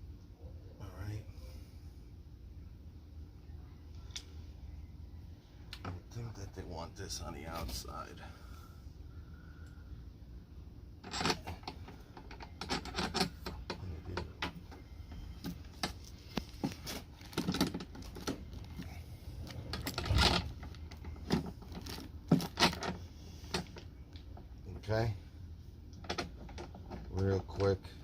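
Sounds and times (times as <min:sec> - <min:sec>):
clicks and rattles of hardware: 0:11.0 - 0:18.8, 0:19.5 - 0:24.2, 0:25.9 - 0:27.7.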